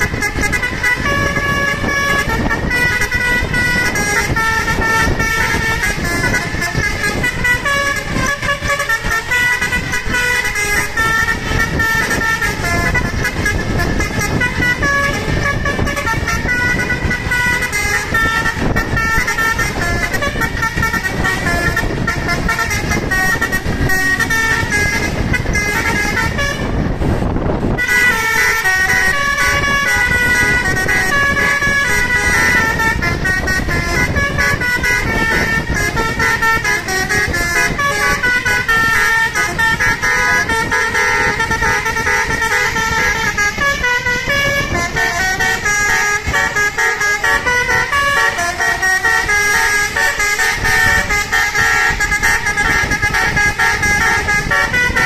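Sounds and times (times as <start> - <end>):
musical air horn tune: 0.0 - 55.0.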